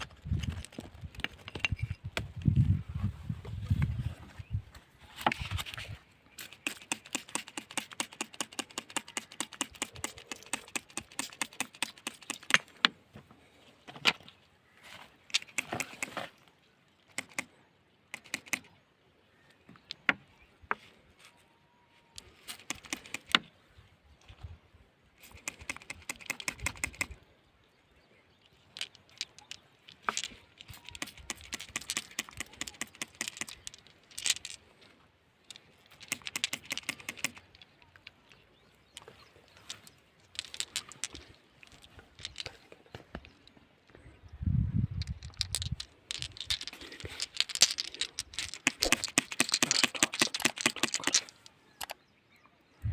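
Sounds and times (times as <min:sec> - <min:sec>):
stones knocking: 0:00.0 - 0:02.8, 0:28.8 - 0:34.6, 0:38.9 - 0:43.6, 0:45.0 - 0:51.9
gravel clicking and rattling: 0:00.0 - 0:24.6, 0:25.2 - 0:52.4.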